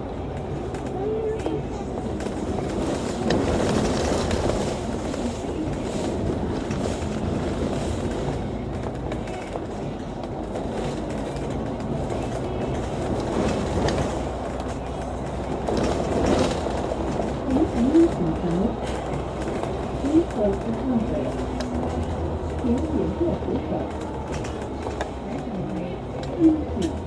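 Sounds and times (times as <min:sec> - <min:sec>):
bus engine and road rumble: 0:00.0 - 0:27.0
light rattling of bus body: 0:00.0 - 0:27.0.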